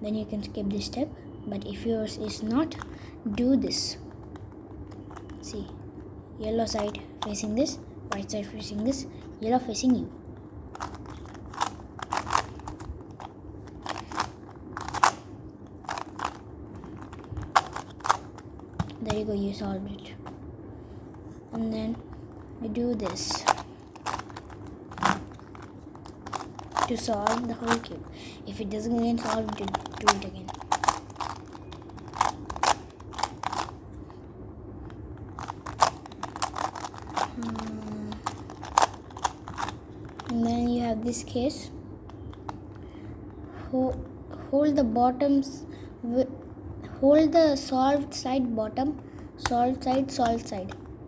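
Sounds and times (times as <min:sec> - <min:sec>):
plastic puzzle clacking and rattling: 0:04.1 - 0:05.7, 0:10.7 - 0:19.3, 0:21.6 - 0:34.2, 0:34.8 - 0:41.2, 0:49.4 - 0:50.8.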